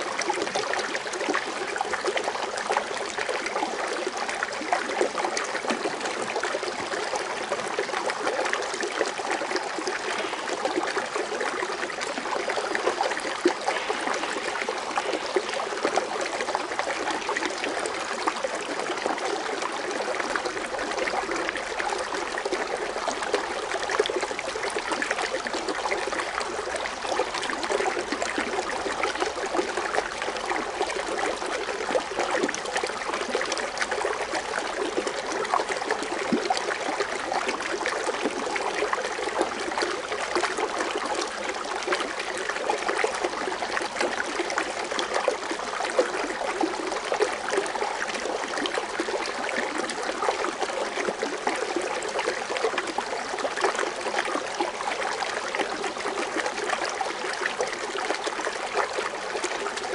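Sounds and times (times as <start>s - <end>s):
water fountain splashing: 9.6s - 18.4s.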